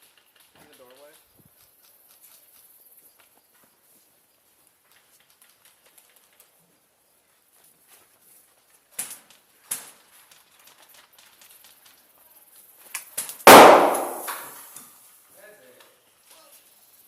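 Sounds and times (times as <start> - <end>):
sharp snaps: 13.5 - 14.6
very loud bang: 13.5 - 14.6.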